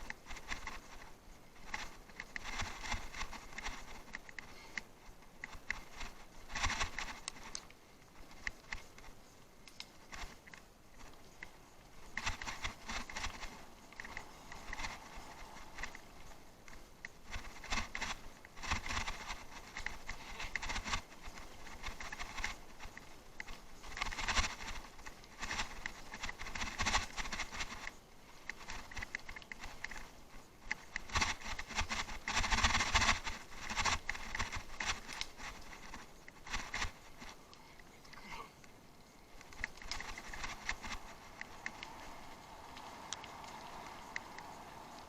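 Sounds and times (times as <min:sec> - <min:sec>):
bicycle rattling: 0:00.0 - 0:45.0
tyres crunching over rough ground: 0:00.0 - 0:45.0.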